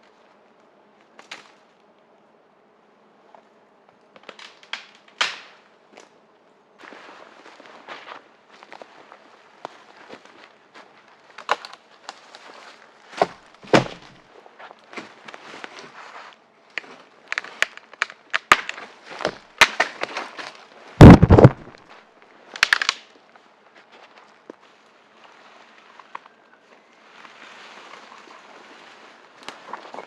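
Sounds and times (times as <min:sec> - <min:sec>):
dry branches cracking and crunching: 0:00.5 - 0:01.9, 0:03.9 - 0:06.2, 0:07.6 - 0:16.0, 0:16.7 - 0:24.5, 0:27.2 - 0:30.0
heavy low thud: 0:21.0 - 0:21.7.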